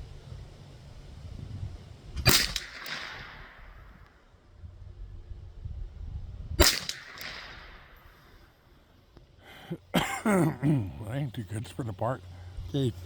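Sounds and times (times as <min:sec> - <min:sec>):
wind rumbling on microphone: 0:00.0 - 0:08.6
rifle shot with echo: 0:02.2 - 0:04.2, 0:06.6 - 0:08.3.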